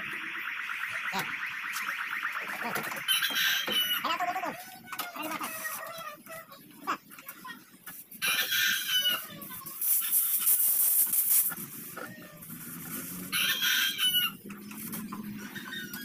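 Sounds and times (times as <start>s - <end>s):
rooster crowing: 13.3s - 14.4s.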